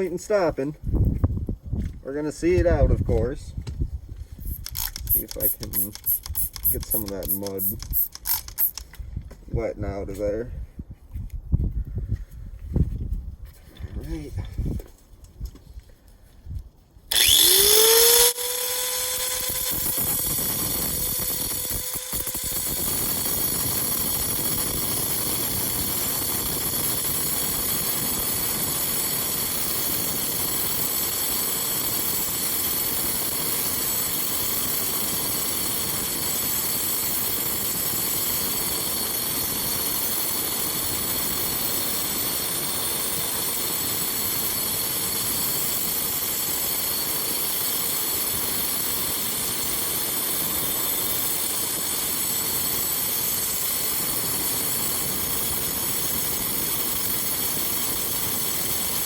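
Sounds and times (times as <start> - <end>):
angle grinder whining: 17.1 - 48.1.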